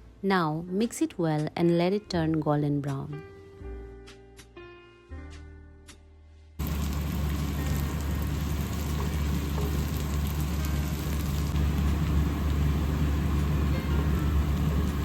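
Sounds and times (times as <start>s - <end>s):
low steady hum: 6.6s - 15.0s
paste sizzling in hot oil: 6.6s - 15.0s.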